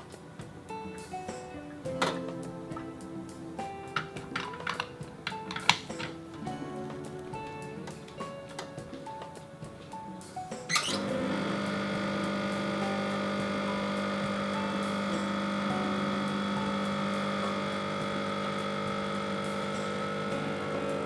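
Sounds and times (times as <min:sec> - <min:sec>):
espresso machine pump humming: 0:11.0 - 0:21.0.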